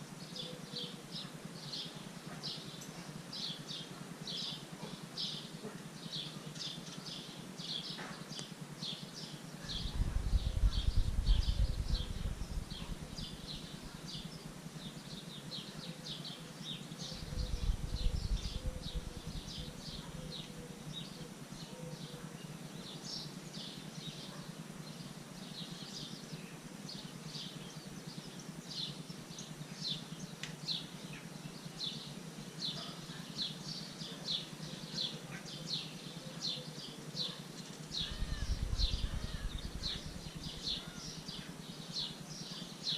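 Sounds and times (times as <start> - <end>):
wind buffeting microphone: 9.7 - 14.2, 17.2 - 20.1, 38.0 - 40.8
high chirping calls: 16.8 - 21.3, 37.2 - 42.9.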